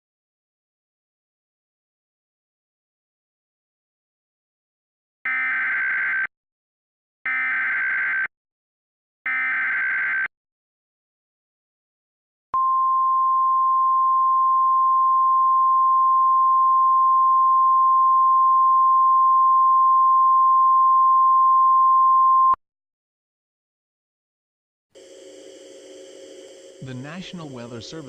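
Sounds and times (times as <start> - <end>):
high-pitched alarm tone: 25.0 - 28.0.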